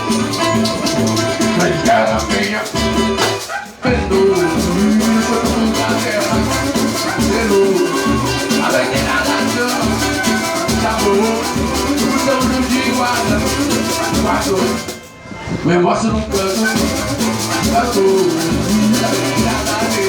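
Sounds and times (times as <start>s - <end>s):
shakers: 0.0s - 15.1s, 16.3s - 20.0s
drums: 0.0s - 20.0s
wavering melodic line: 4.1s - 15.7s.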